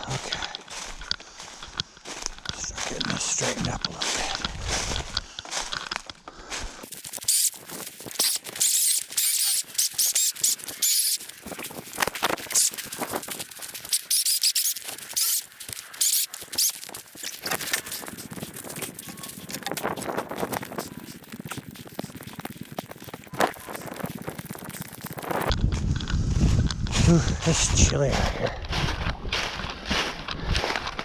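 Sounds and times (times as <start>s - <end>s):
branches scraping and rustling: 6.8s - 26.4s.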